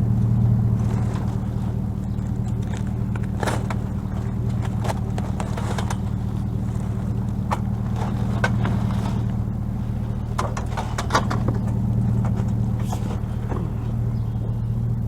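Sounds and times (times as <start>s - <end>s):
vehicle engine idling: 0.0s - 15.0s
items being handled: 0.8s - 9.4s.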